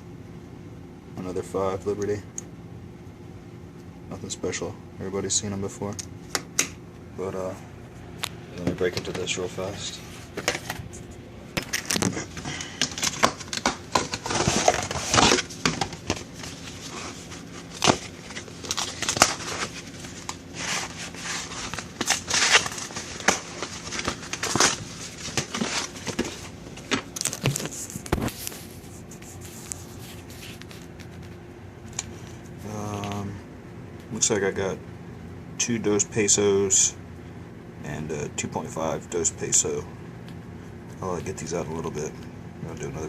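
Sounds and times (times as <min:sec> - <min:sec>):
package tearing and crinkling: 0:11.6 - 0:31.4.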